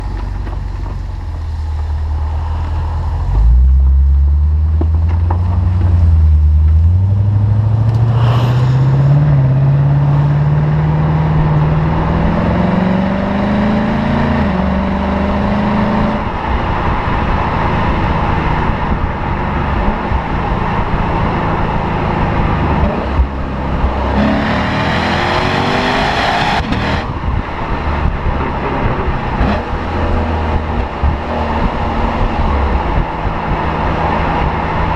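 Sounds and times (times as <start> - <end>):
car engine accelerating hard: 0.0 - 34.9.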